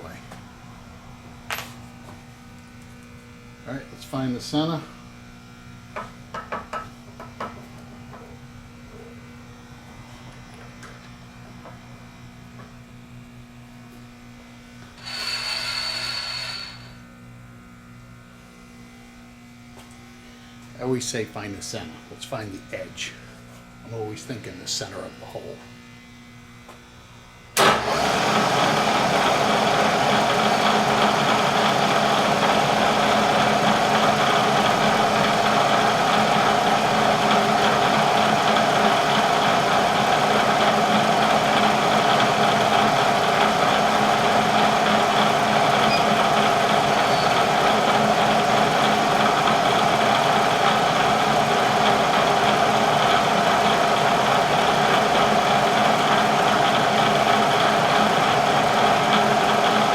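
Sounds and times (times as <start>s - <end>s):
milling machine motor humming: 14.8s - 17.0s, 27.6s - 59.9s.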